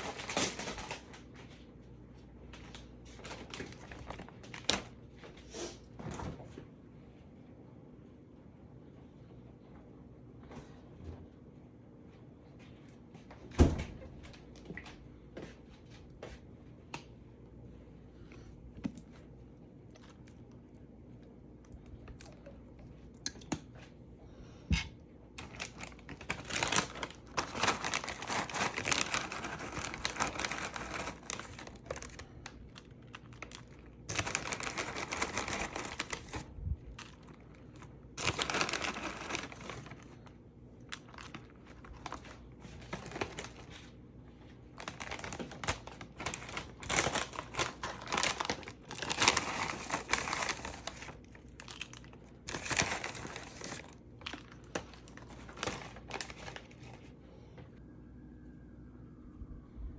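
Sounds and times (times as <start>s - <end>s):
crinkling and rustling: 0.0s - 6.6s, 24.7s - 57.2s.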